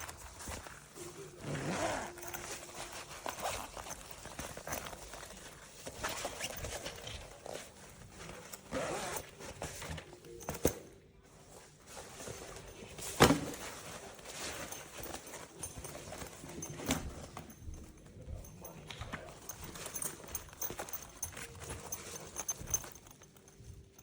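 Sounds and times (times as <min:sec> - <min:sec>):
rustling: 0:00.0 - 0:24.0
suitcase zipper runs: 0:01.4 - 0:10.0.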